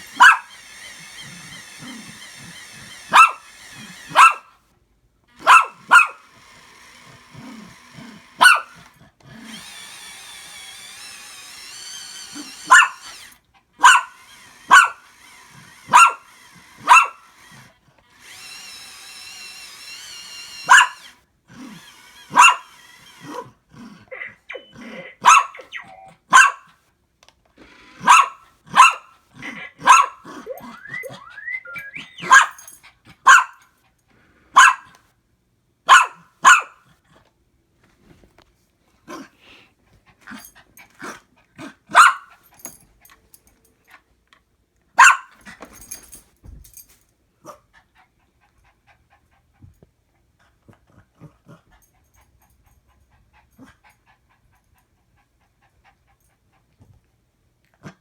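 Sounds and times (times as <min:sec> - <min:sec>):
dog barking: 0:00.2 - 0:00.5, 0:03.1 - 0:03.4, 0:04.1 - 0:04.5, 0:05.4 - 0:06.2, 0:08.4 - 0:08.7, 0:12.6 - 0:13.0, 0:13.8 - 0:15.0, 0:15.9 - 0:16.2, 0:16.8 - 0:17.2, 0:20.7 - 0:21.0, 0:22.3 - 0:22.6, 0:25.1 - 0:26.7, 0:28.0 - 0:30.6, 0:32.1 - 0:32.6, 0:33.2 - 0:33.6, 0:34.6 - 0:34.9, 0:35.9 - 0:36.8, 0:41.9 - 0:42.4, 0:45.0 - 0:45.4
toy robot beeps and whistles: 0:24.1 - 0:26.5, 0:29.7 - 0:32.8.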